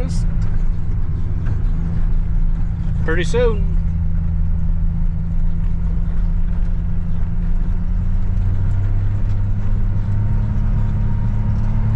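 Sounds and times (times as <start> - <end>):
engine idling: 0.0 - 11.9.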